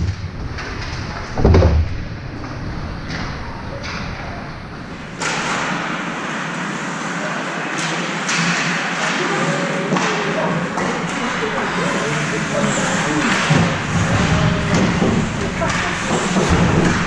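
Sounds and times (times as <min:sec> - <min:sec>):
arena noise: 0:00.0 - 0:17.0
heavy thud: 0:01.3 - 0:02.2.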